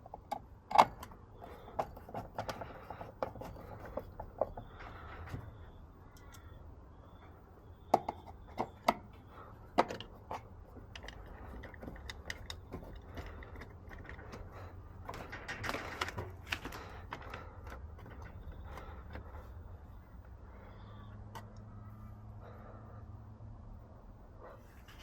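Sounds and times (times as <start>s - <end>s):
low steady hum: 0.0s - 25.0s
sharp clicks and knocks: 7.9s - 19.5s.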